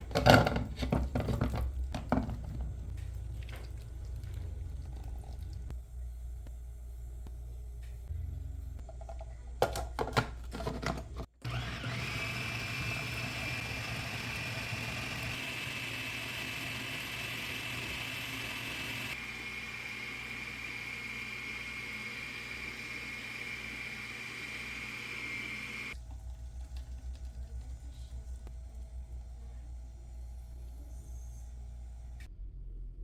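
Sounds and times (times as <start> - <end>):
small electric motor whining: 11.4 - 26.0.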